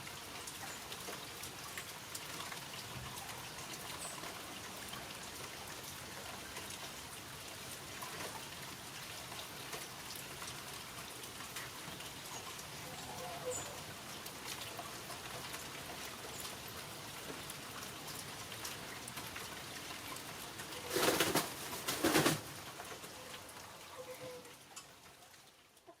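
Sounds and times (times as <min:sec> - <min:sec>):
rain pattering: 0:00.0 - 0:26.0
hen murmuring calls: 0:23.9 - 0:24.5.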